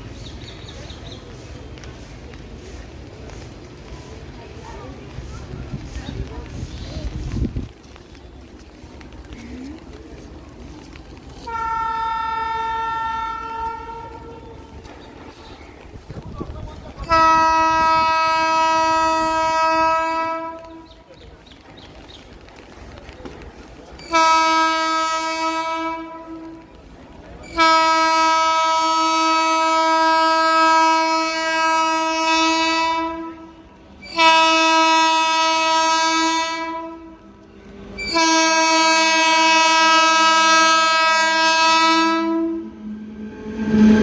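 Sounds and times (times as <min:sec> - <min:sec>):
locomotive horn blasts: 0:11.5 - 0:14.8, 0:17.0 - 0:20.9, 0:24.1 - 0:26.6, 0:27.6 - 0:37.2, 0:38.0 - 0:44.0.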